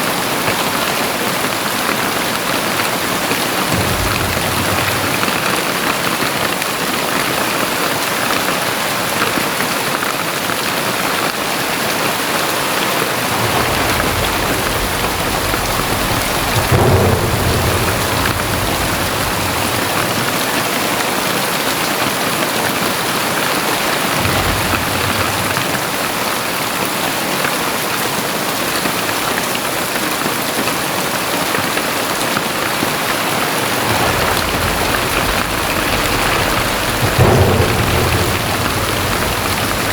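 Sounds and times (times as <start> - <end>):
heavy rain pouring: 0.0 - 39.9
thunder rumbling: 2.2 - 7.5, 12.8 - 27.4, 32.2 - 39.9.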